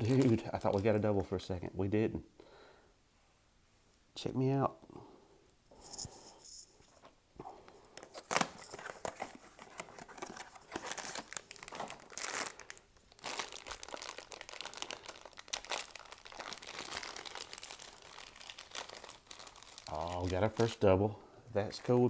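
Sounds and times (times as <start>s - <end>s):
packaging crinkling: 0.0s - 1.2s, 7.9s - 20.8s.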